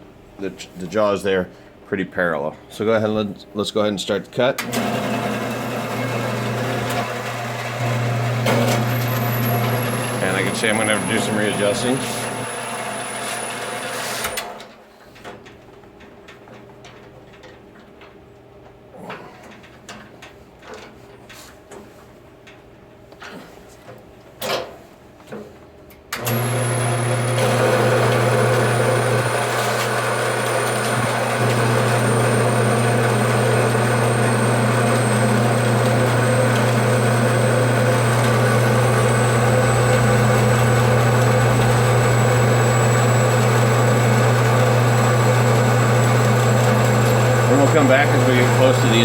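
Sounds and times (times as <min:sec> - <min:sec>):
band saw cutting metal: 0:04.7 - 0:14.4, 0:26.2 - 0:49.0.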